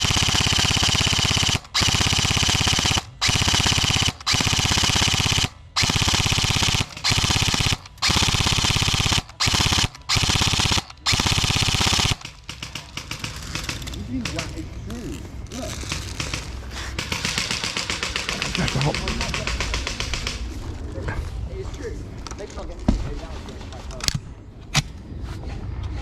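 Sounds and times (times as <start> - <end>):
airsoft gun firing full auto: 0.0 - 14.6, 15.8 - 20.4.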